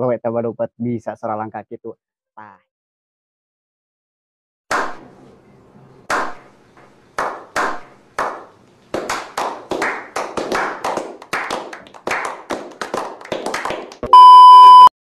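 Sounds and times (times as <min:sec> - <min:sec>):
hands clapping: 0:06.1 - 0:06.4, 0:07.2 - 0:14.1.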